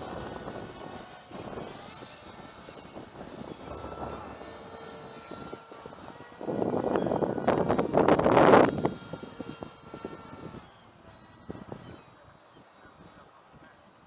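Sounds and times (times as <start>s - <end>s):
electric ducted fan whining: 0.0s - 14.0s
rush of noise: 2.9s - 9.0s.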